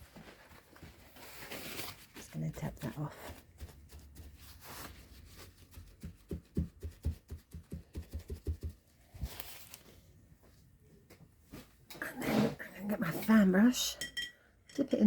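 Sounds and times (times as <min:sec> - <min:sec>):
kitchen roll dabbing on cardstock: 0:02.5 - 0:09.8.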